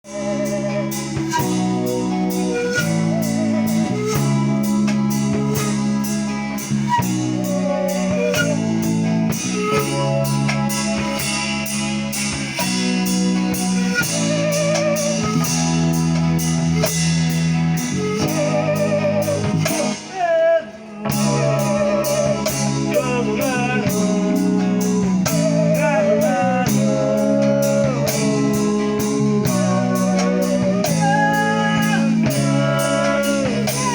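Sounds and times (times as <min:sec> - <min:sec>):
bamboo pan pipes: 0:00.0 - 0:33.9
bass notes: 0:00.0 - 0:33.9
person singing: 0:20.1 - 0:33.9.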